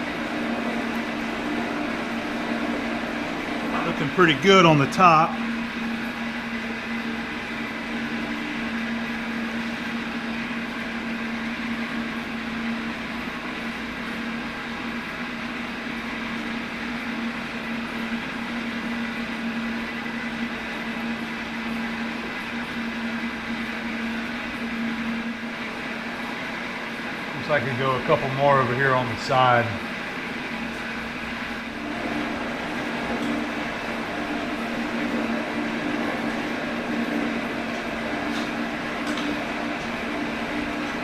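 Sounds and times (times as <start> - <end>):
metal shaper humming: 31.5 - 41.0.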